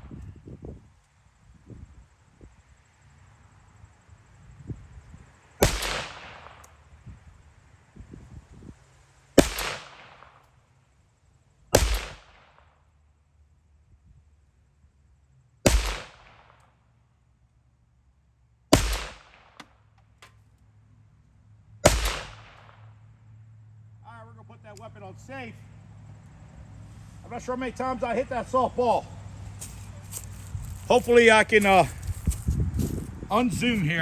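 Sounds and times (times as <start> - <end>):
pistol shots with echo: 5.6 - 6.6, 9.4 - 10.4, 11.7 - 12.6, 15.6 - 16.5, 18.7 - 19.6, 21.8 - 22.8.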